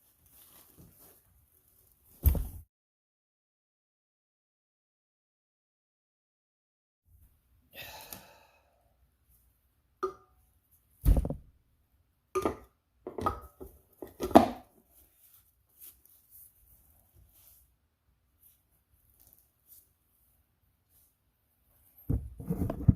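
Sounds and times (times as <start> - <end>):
deep thump: 11.0 - 11.5.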